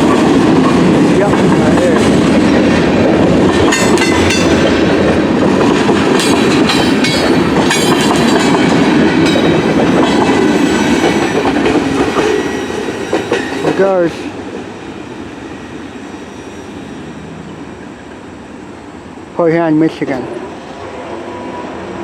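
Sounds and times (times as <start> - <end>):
clickety-clack over rail joints: 0.0 - 14.8, 19.9 - 20.5
freight train rumbling past: 0.0 - 22.0.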